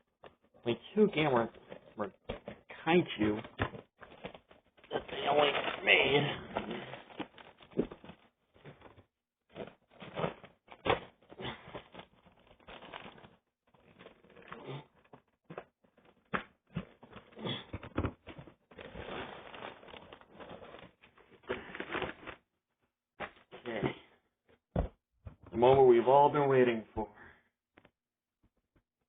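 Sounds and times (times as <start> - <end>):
packaging rustling and crinkling: 3.7 - 17.4, 18.2 - 22.4.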